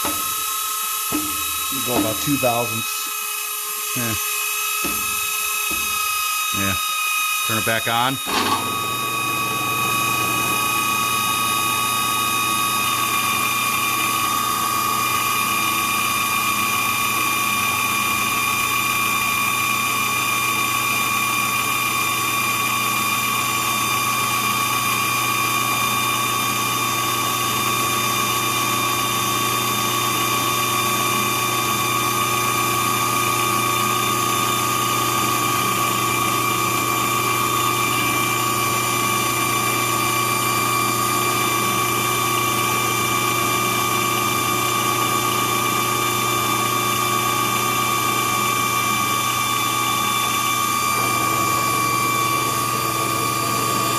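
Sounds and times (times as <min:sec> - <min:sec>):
motor hum with high whine: 0:00.0 - 0:53.9.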